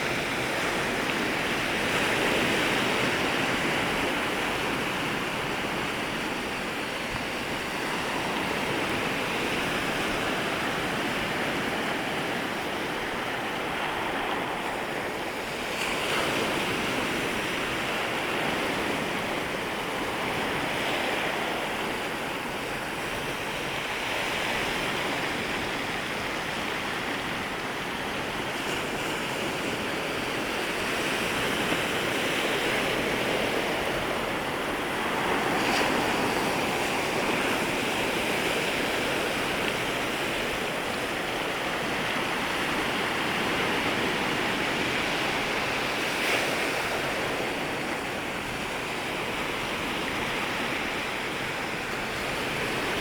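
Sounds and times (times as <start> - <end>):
sea waves washing ashore: 0.0 - 53.0.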